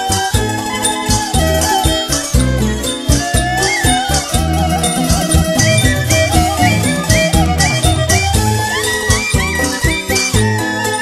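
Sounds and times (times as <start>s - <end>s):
steady drum beat: 3.1s - 9.6s
wavering melody line: 3.2s - 9.5s.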